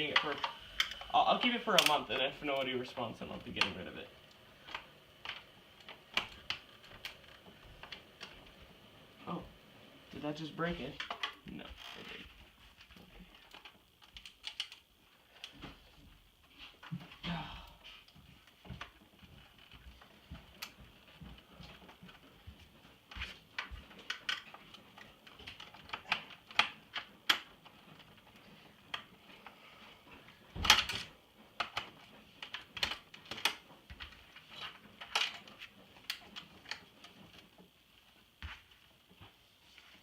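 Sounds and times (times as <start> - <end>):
clicks of screws and plastic: 12.8 - 15.7.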